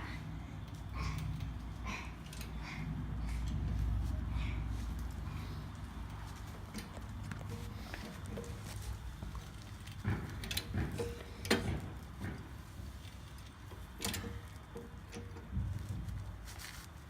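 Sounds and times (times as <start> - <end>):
trolley jack clicking and knocking: 6.6 - 16.1.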